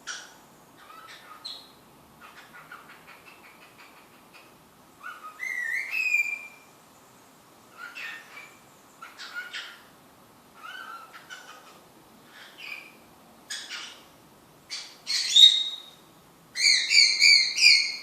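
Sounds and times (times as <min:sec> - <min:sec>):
cockatiel whistling and chirping: 0:05.0 - 0:06.6, 0:14.7 - 0:15.8, 0:16.6 - 0:18.0.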